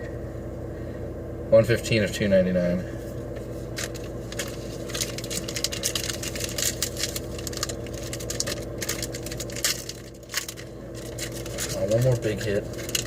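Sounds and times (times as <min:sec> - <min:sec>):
low hum: 0:00.0 - 0:13.0
card wrappers crinkling: 0:03.6 - 0:13.0.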